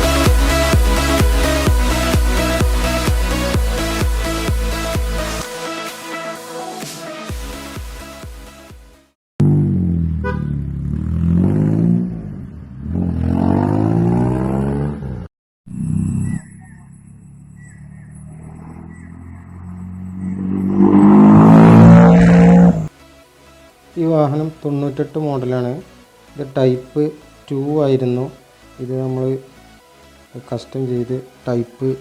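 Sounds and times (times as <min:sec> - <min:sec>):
car engine revving: 0:09.4 - 0:22.9.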